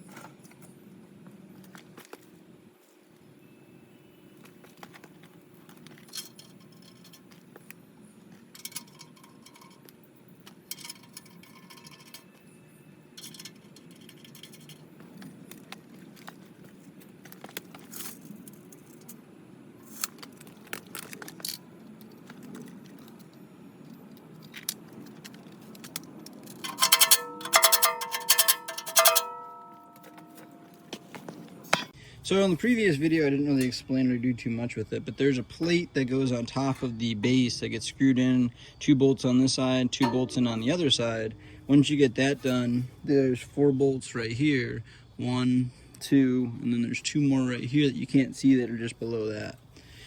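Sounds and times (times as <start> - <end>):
low steady hum: 0.0 - 50.0
light metallic clinks: 8.5 - 15.6, 21.4 - 31.1.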